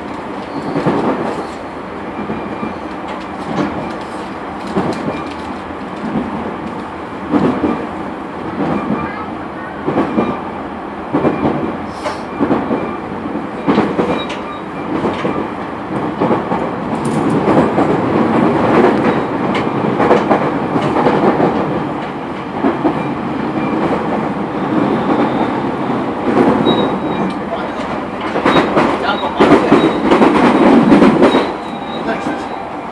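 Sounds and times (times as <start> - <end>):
wheels clicking over rail joints: 0.0 - 7.9, 13.5 - 23.0
train wheels rumbling on rail: 0.0 - 32.9.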